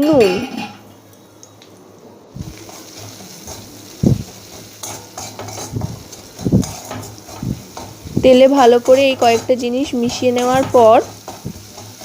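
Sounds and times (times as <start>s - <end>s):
faint sizzle of oil: 0.0s - 12.0s
utensil scraping pan: 2.5s - 12.0s.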